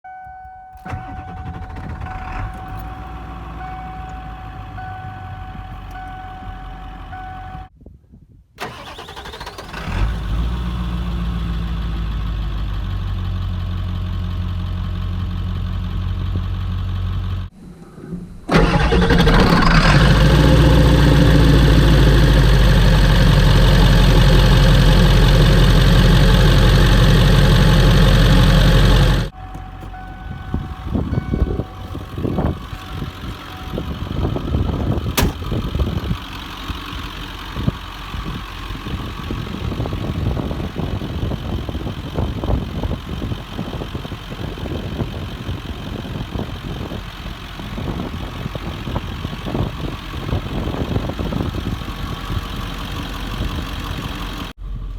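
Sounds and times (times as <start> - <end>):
diesel engine starting and idling: 0.1 - 7.7, 8.6 - 54.9
beeping chime: 29.4 - 32.0.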